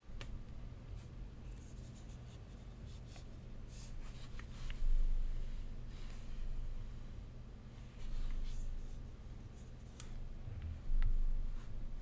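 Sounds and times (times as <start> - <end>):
faint low hum: 0.0 - 12.0
low thump: 10.4 - 11.9.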